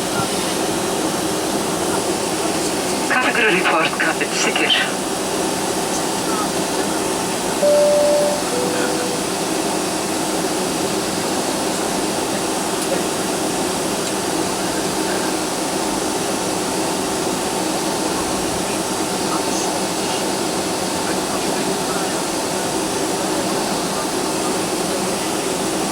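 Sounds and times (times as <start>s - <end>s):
faint steady whine: 7.6s - 9.5s.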